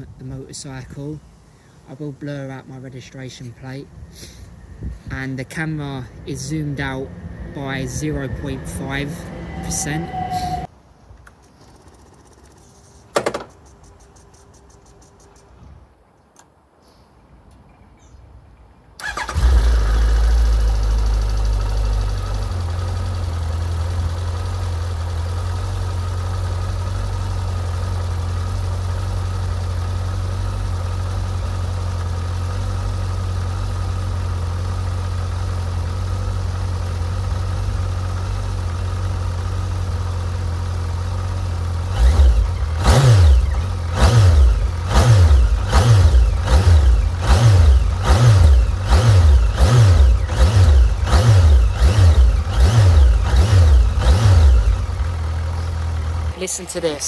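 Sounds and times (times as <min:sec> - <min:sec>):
throttle blips revving engine: 0:03.9 - 0:10.7, 0:19.0 - 0:57.0
motorcycle engine idling: 0:19.0 - 0:57.0.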